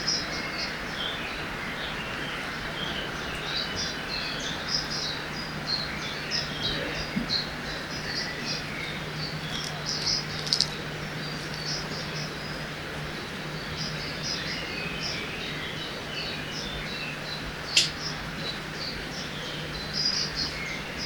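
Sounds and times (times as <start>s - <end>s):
small birds chirping: 0.0s - 21.0s
flowing water rushing: 0.3s - 21.0s
sharp click: 17.8s - 18.0s.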